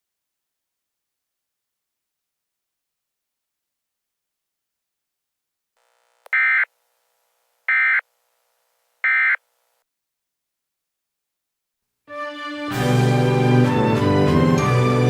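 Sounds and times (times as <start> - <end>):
buzzy electronic data bursts: 5.8 - 6.7.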